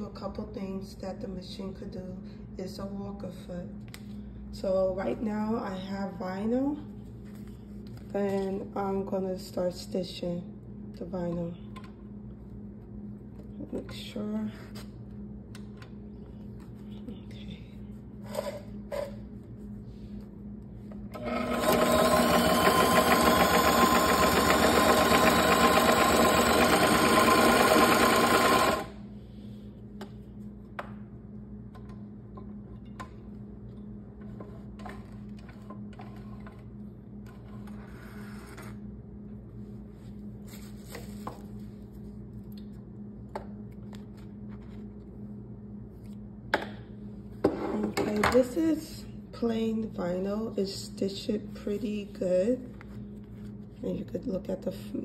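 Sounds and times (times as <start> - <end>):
low steady hum: 0.0 - 55.0
industrial sewing machine stitching: 21.2 - 29.0.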